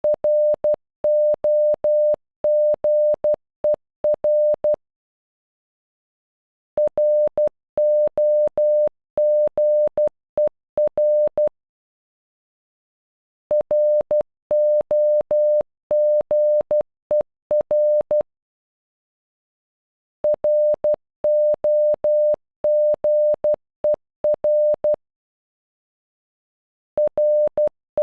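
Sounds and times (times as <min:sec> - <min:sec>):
morse code beeps: 0:00.0 - 0:03.4, 0:04.1 - 0:04.8, 0:06.8 - 0:11.5, 0:13.5 - 0:18.2, 0:20.3 - 0:25.0, 0:27.0 - 0:28.0.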